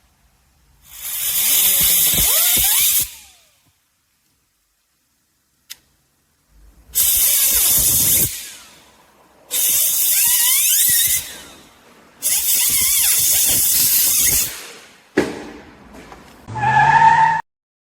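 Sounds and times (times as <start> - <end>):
loud hissing blasts with squeal: 0.9 - 3.4, 7.0 - 8.8, 9.5 - 14.9.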